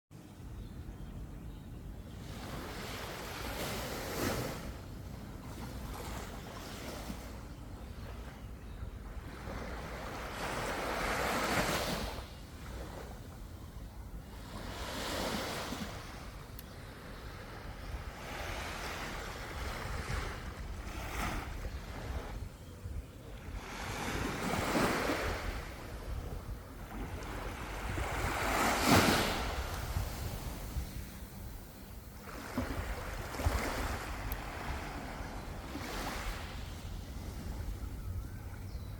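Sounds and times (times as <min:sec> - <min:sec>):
wind rumble on microphone: 0:00.4 - 0:38.9
sea waves breaking on shore: 0:02.3 - 0:04.8, 0:14.3 - 0:16.5, 0:23.5 - 0:38.7.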